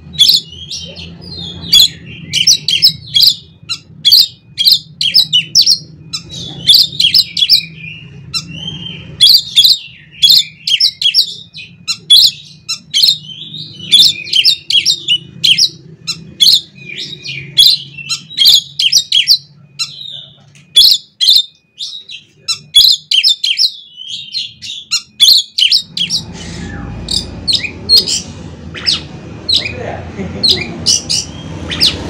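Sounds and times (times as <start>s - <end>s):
songbird singing: 0.0s - 32.0s
low rumbling noise: 25.8s - 32.0s.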